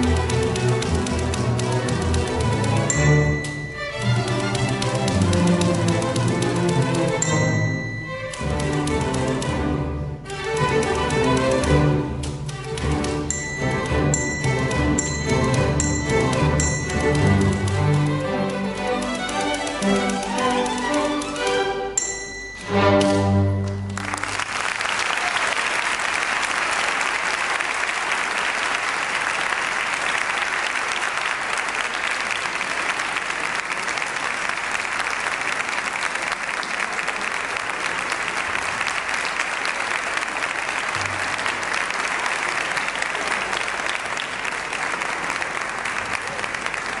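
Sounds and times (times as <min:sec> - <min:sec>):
audience applauding: 0:00.0 - 0:09.4, 0:22.8 - 0:47.0
string orchestra chord: 0:00.0 - 0:24.3.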